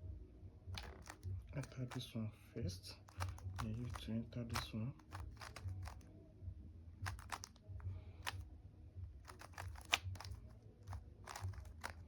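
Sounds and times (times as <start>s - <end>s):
puzzle cube layers clicking: 0.8s - 2.0s, 3.1s - 6.0s, 7.0s - 7.6s, 9.3s - 12.0s.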